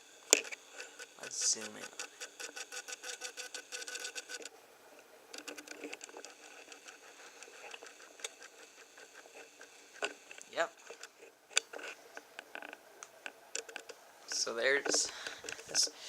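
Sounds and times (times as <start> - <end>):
zoom lens motor ticking: 0.3 - 4.5, 5.3 - 11.8.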